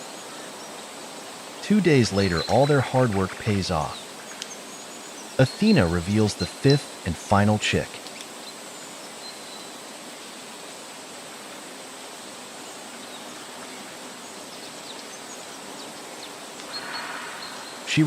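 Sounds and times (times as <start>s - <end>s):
faint high whine: 0.0s - 9.8s, 12.6s - 18.0s
outdoor background hiss: 0.0s - 18.0s
faint high ticks: 16.5s - 16.8s.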